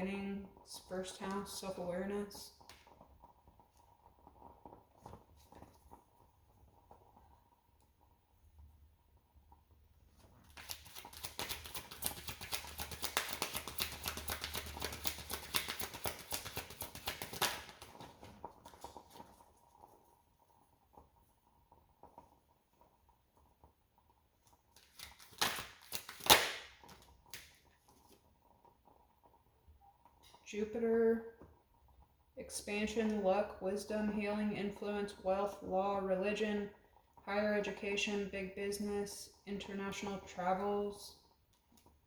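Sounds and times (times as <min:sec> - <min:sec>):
cards being shuffled: 0:10.4 - 0:19.2, 0:24.8 - 0:27.5
cards snapping: 0:10.6 - 0:18.0, 0:24.8 - 0:26.7.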